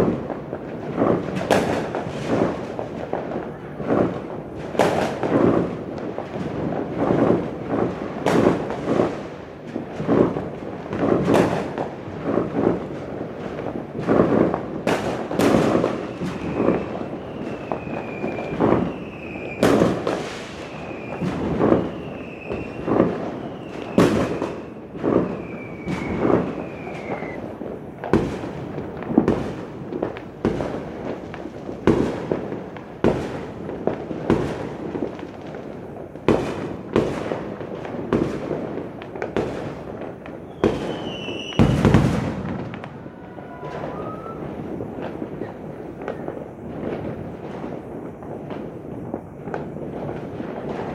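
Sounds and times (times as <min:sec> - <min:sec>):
sharp firecracker cracks: 0:00.0 - 0:10.4, 0:11.0 - 0:12.8, 0:14.0 - 0:27.4, 0:31.8 - 0:48.7
fireworks bangs and booms: 0:00.0 - 0:50.9
falling firework whistle: 0:01.0 - 0:05.8, 0:06.6 - 0:30.8, 0:39.2 - 0:50.9.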